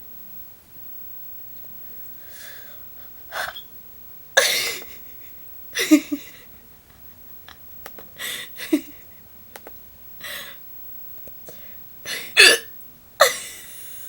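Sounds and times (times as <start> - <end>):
breaths: 2.1 - 3.6, 8.2 - 8.6, 10.2 - 10.6, 11.5 - 12.4
person hiccuping: 3.4 - 3.7, 12.4 - 13.5.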